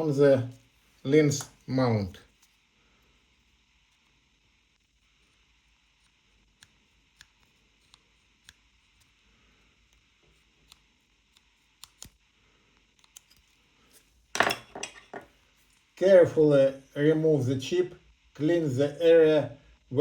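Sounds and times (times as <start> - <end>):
metal objects clattering: 14.4 - 15.3.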